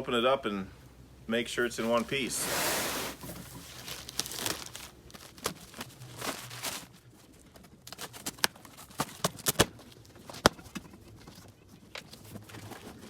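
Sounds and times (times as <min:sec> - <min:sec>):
cardboard tearing and rustling: 0:01.8 - 0:07.0, 0:07.8 - 0:09.8.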